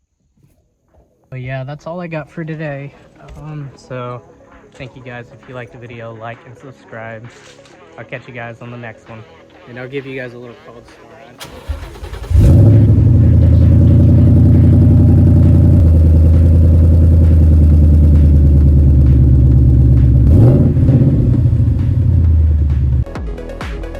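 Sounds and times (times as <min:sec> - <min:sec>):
car engine cold start idling: 0:11.4 - 0:22.6.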